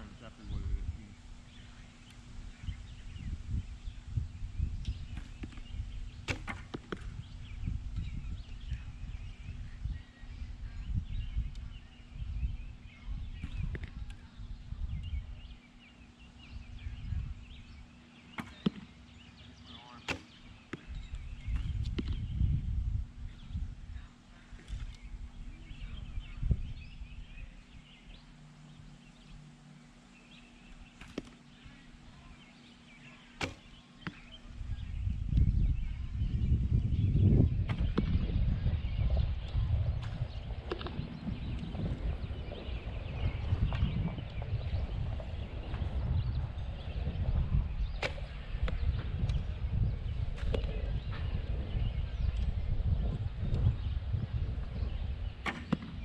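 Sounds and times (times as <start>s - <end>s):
low outdoor rumble: 0.0s - 56.0s
small birds chirping: 0.0s - 56.0s
arrow knock: 5.1s - 7.1s, 18.4s - 18.9s, 20.0s - 22.2s, 33.4s - 34.3s, 55.4s - 56.0s.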